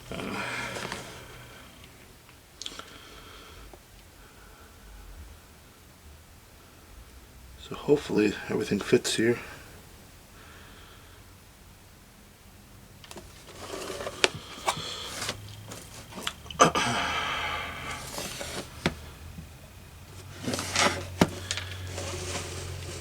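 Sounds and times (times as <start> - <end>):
cardboard and plastic rustling: 0.0 - 2.0, 13.0 - 23.0.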